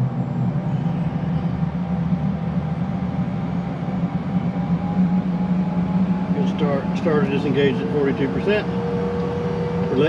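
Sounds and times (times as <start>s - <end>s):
jet engine spooling up: 0.0s - 10.0s.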